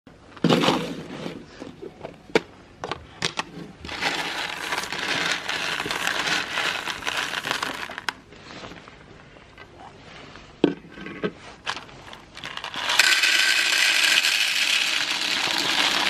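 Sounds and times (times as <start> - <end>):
meat grinder crunching: 3.9 - 8.1, 12.4 - 16.0.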